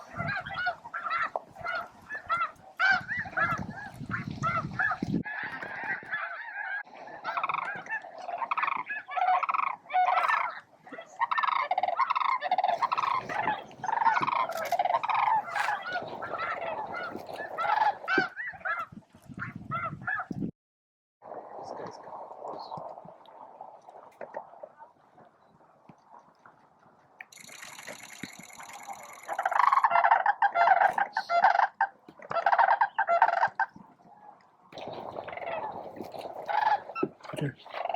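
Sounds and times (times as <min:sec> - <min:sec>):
geese honking: 0:00.1 - 0:18.9, 0:28.7 - 0:33.7, 0:35.1 - 0:37.9.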